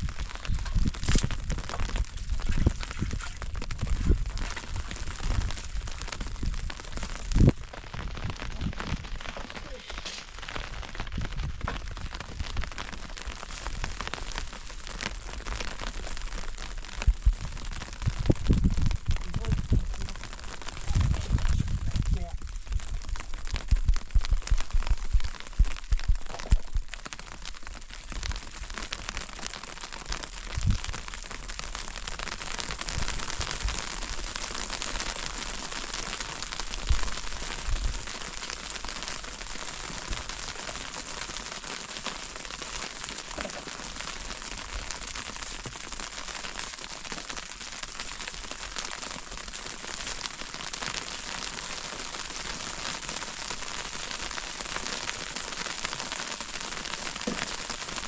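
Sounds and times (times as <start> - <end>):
crackling hiss: 0.0 - 58.0
dull low thumps: 20.8 - 26.9.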